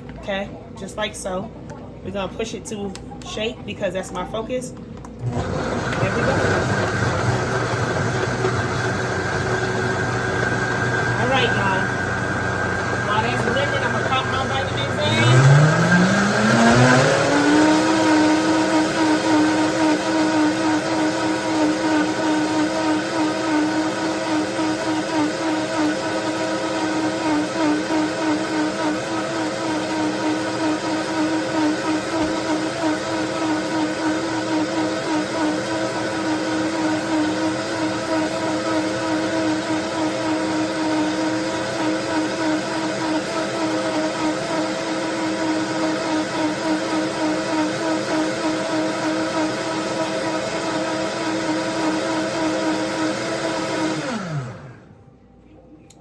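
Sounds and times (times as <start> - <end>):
blender motor running: 5.2 - 55.0.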